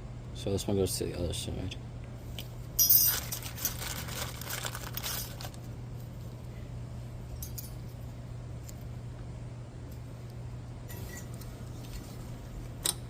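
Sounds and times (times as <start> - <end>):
steady low hum: 0.0 - 13.0
metal clip clinking and rattling: 2.8 - 5.6.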